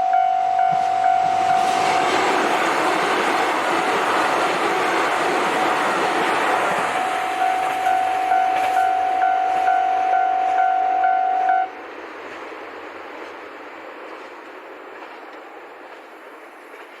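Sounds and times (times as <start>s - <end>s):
level crossing bell ringing: 0.0s - 2.0s, 7.2s - 11.7s
diesel train rumble: 0.0s - 17.0s.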